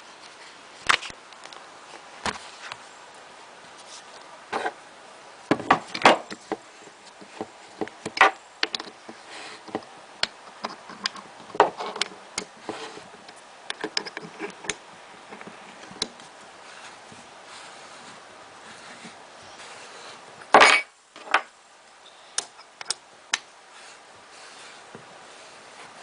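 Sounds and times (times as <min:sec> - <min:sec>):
clicks and knocks of parts handled: 0:05.5 - 0:16.3.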